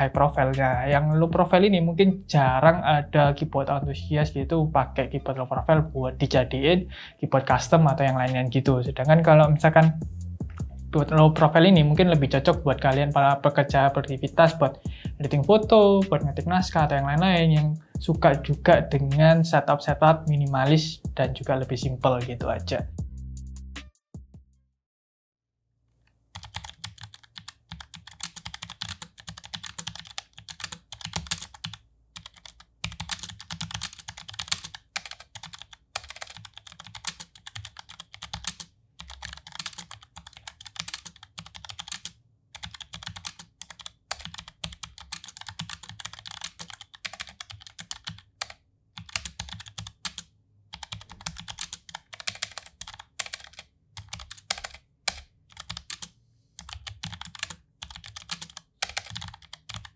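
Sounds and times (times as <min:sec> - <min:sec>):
mechanical keyboard typing: 0:26.3 - 0:59.9.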